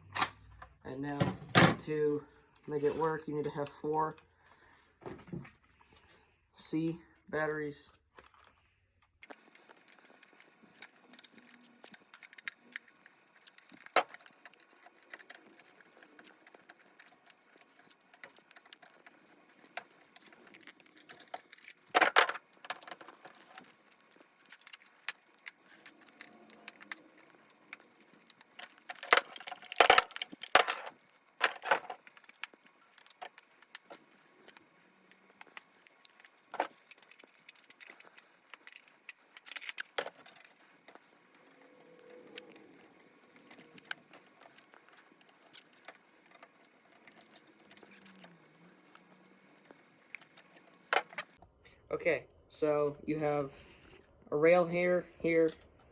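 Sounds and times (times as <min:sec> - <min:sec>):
plastic clatter: 0:09.2 - 0:51.4
plastic toy blaster clicks and rattles: 0:09.2 - 0:51.4.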